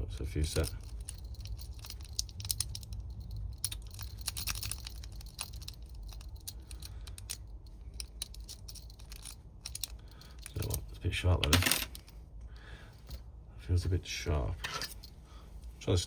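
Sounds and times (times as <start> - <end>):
low steady hum: 0.0 - 16.0
lock pick clicking and scraping: 0.6 - 10.8.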